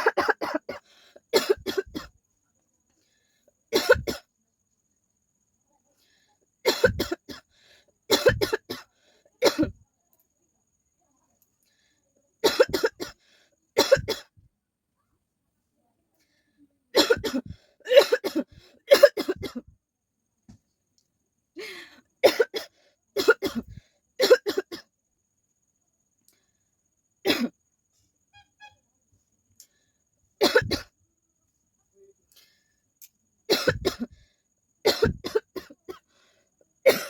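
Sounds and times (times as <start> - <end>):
woman coughing: 0.0 - 2.1, 3.7 - 4.3, 6.6 - 7.4, 8.1 - 9.8, 12.4 - 13.2, 13.8 - 14.3, 17.0 - 19.7, 21.6 - 24.9, 27.3 - 27.5, 30.4 - 30.9, 33.5 - 34.2, 34.9 - 36.0.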